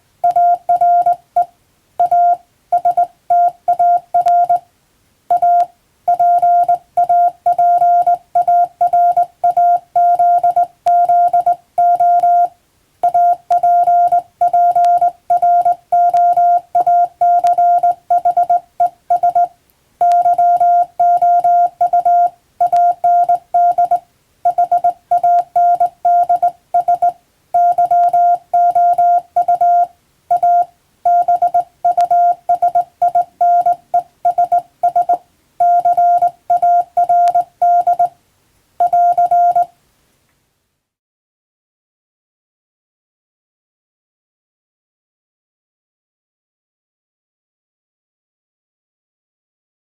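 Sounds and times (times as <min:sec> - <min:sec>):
morse code beep tone: 0:00.2 - 0:04.6, 0:05.3 - 0:38.1, 0:38.8 - 0:39.7.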